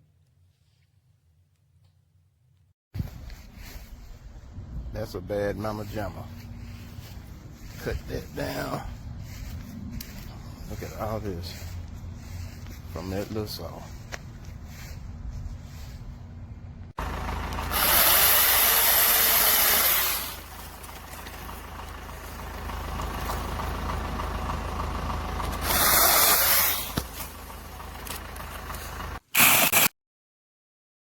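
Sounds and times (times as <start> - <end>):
mini chainsaw revving: 17.5 - 20.5, 25.6 - 27.2, 29.4 - 29.9.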